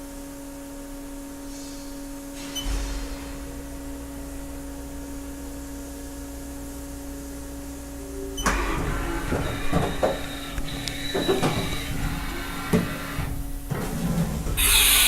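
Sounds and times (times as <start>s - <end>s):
machine electrical hum and whine: 0.0s - 15.0s
mechanical whirring and clicking: 8.4s - 15.0s.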